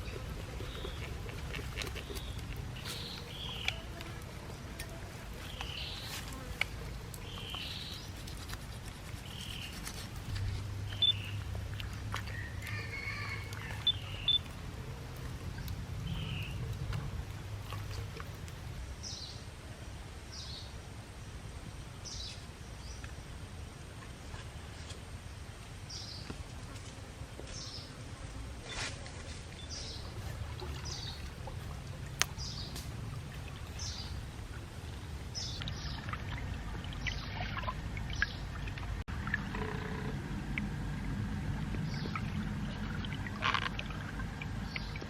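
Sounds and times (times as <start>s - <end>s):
low background rumble: 0.0s - 20.4s, 29.6s - 45.0s
high animal chirps: 10.3s - 11.5s, 13.8s - 14.5s.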